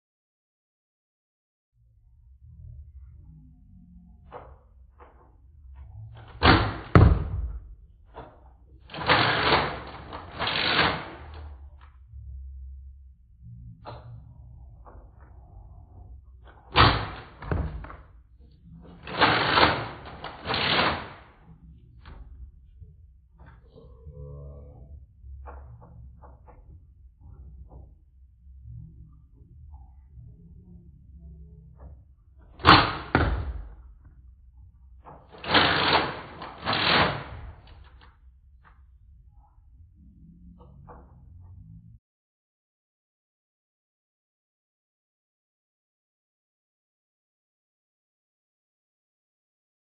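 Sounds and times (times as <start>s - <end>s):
foam dart blaster thump: 6.4s - 7.6s.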